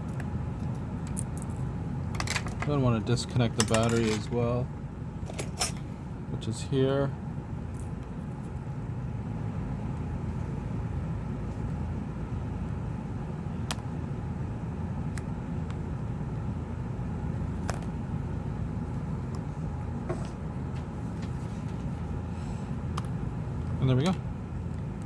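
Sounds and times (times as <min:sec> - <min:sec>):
low background rumble: 0:00.0 - 0:25.0.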